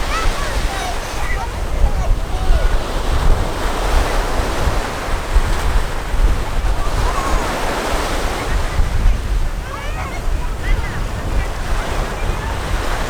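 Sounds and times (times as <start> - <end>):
surf rushing: 0.0 - 13.0
wind buffeting microphone: 0.0 - 13.0.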